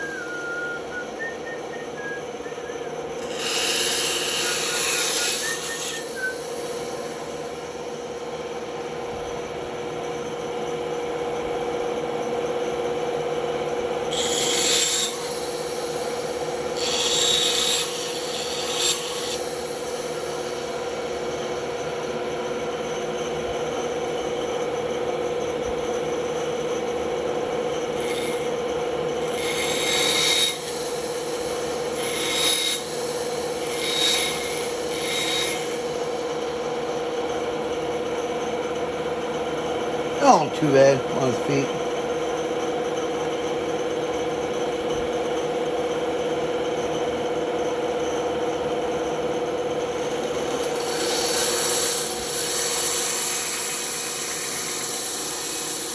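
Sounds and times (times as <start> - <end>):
band saw humming: 0.0 - 8.4
saw blade rasping through wood: 3.2 - 7.4, 14.1 - 20.2, 27.9 - 28.6, 29.2 - 36.0, 50.0 - 55.9.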